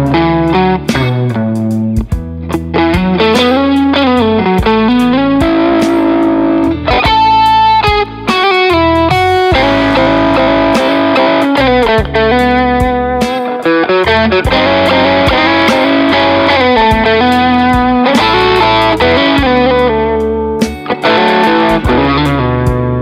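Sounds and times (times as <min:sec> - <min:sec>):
backing track with drums and bass: 0:00.0 - 0:23.0
electric guitar lead lines: 0:00.0 - 0:23.0.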